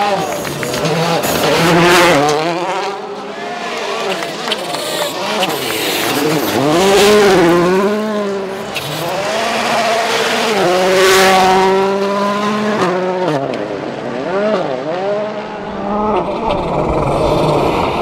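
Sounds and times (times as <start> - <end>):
rally car engine accelerating: 0.0 - 18.0.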